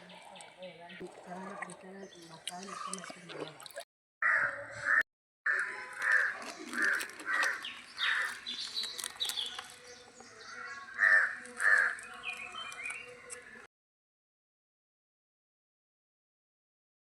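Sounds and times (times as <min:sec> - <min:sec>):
bird calling: 0:04.2 - 0:13.7
faint chirps of other birds: 0:04.2 - 0:13.7.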